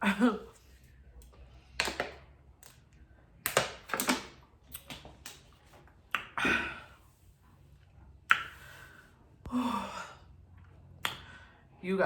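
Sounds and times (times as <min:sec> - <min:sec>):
wet mouth clicks and smacks: 0:11.0 - 0:11.3.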